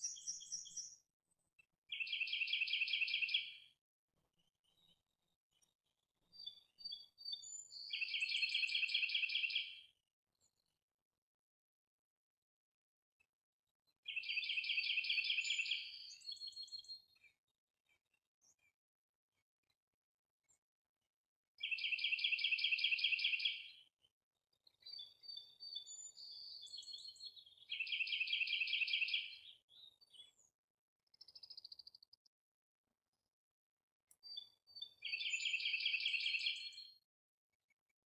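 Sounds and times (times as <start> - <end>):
songbird trilling and chirping: 0.0 - 1.0, 1.9 - 3.5, 7.2 - 9.7, 14.1 - 16.4, 24.9 - 30.2, 34.2 - 36.9.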